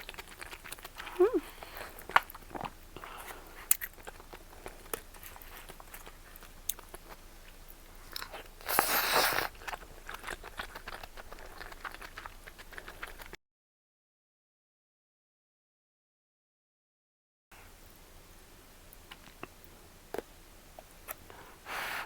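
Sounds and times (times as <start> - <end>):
person chewing food: 0.0 - 13.4, 19.0 - 21.5.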